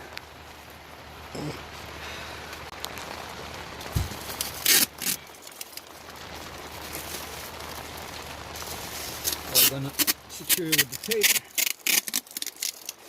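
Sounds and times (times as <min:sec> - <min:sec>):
duct tape ripping: 0:03.8 - 0:05.9, 0:08.6 - 0:13.0
low thump: 0:03.9 - 0:04.2.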